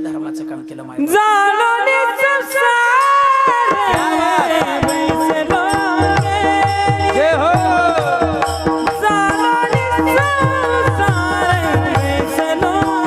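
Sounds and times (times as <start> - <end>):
man singing ornamented vowel: 3.7 - 13.0.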